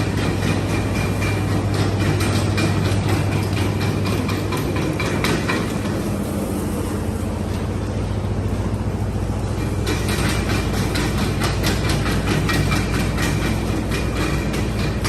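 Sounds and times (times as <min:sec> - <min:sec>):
electric motors humming: 0:00.0 - 0:15.0
fast irregular clatter: 0:09.8 - 0:15.0.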